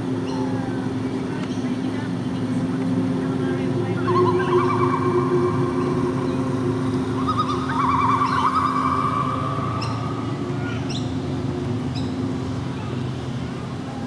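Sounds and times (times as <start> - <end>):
mechanical hum: 0.0 - 14.0
birds calling: 4.0 - 12.3.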